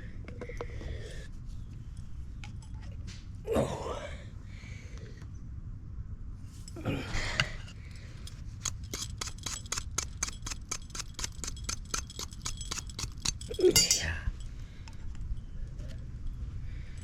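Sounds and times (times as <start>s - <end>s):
hand tool clicking: 8.6s - 14.1s.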